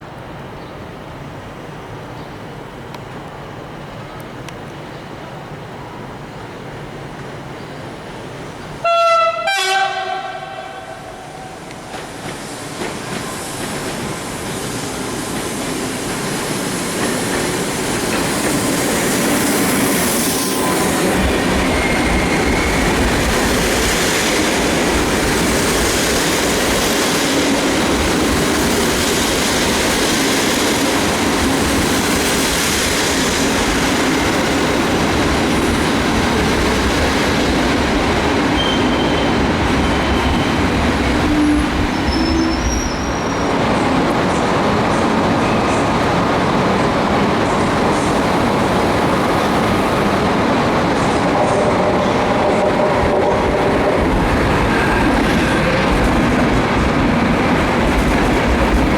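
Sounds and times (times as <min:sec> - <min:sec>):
passenger train running: 0:00.0 - 0:58.9
high wheel squeals: 0:20.1 - 0:23.1, 0:38.6 - 0:43.6.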